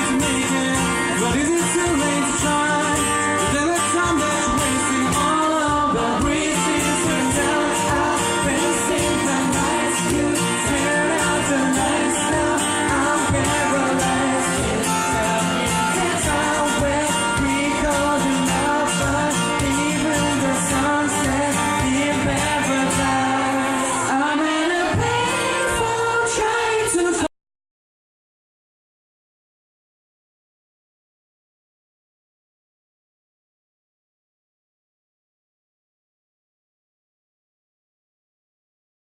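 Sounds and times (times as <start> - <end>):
live band playing pop song: 0.0 - 27.3.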